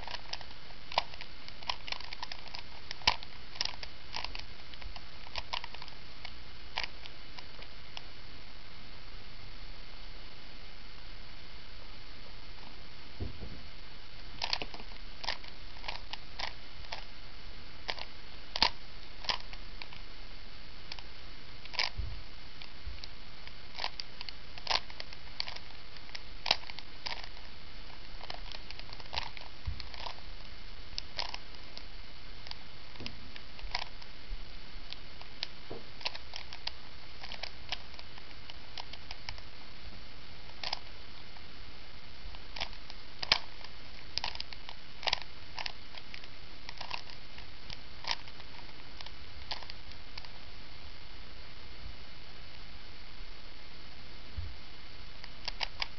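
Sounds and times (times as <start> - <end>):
puzzle cube layers clicking: 0.0 - 8.1, 14.4 - 17.1, 17.9 - 20.0, 20.9 - 22.0, 22.6 - 30.2, 31.0 - 34.0, 34.9 - 39.4, 40.5 - 40.9, 42.3 - 50.4, 55.2 - 55.9
steady hiss: 0.0 - 55.9.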